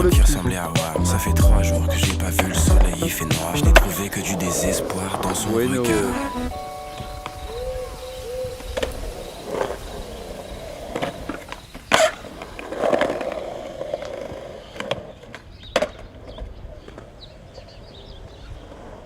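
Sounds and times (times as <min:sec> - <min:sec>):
skateboard rolling: 0:00.0 - 0:19.0
skateboard clacks and knocks: 0:02.1 - 0:05.8, 0:10.7 - 0:17.2.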